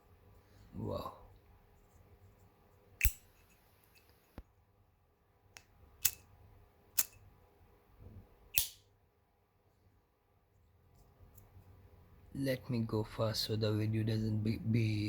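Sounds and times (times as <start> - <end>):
metal lighter clicking: 3.0 - 3.5, 5.6 - 6.3, 7.0 - 7.2, 8.6 - 8.8.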